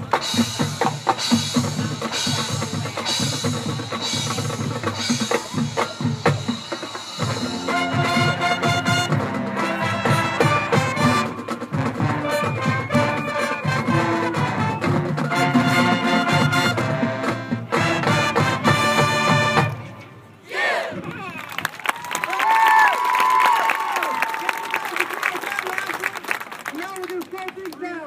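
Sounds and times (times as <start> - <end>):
drum line: 0.0 - 19.9
marching band sustained chords: 0.0 - 20.5.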